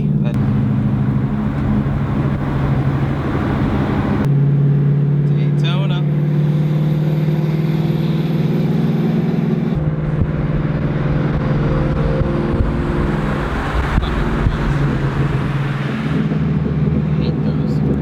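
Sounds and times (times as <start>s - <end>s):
car engine running: 0.0s - 18.0s
road noise: 0.0s - 18.0s.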